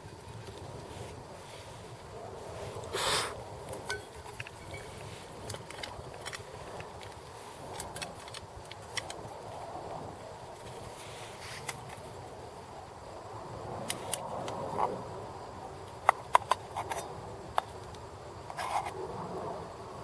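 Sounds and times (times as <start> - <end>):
food cooking hiss: 0.7 - 5.5.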